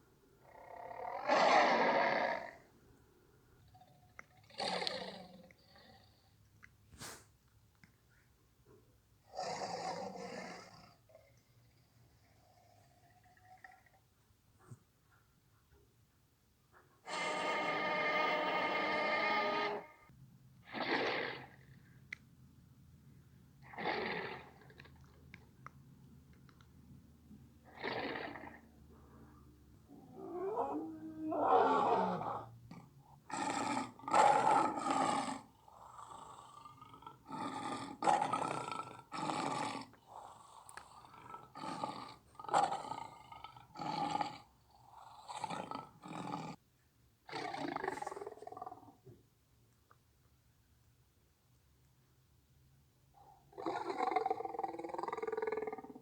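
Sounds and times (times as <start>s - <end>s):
dinosaur roar: 0.6s - 2.6s, 29.9s - 32.5s.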